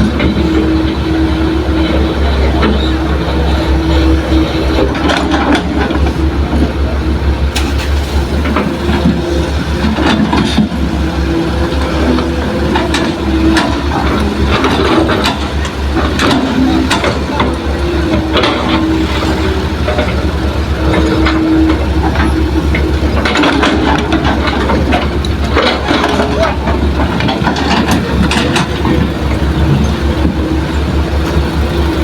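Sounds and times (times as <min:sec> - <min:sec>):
excavator diesel engine running: 0:00.0 - 0:32.0
machine clanks and knocks: 0:07.5 - 0:11.0, 0:11.8 - 0:32.0.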